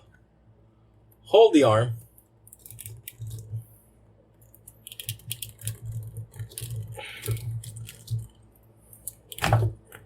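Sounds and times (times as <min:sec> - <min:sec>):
plastic toy parts clicking: 0:02.5 - 0:03.5, 0:04.4 - 0:08.4.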